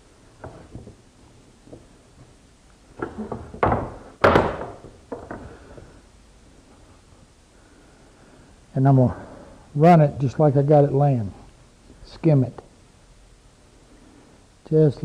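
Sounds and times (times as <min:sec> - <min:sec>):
hollow thuds of boards: 0:03.0 - 0:05.5.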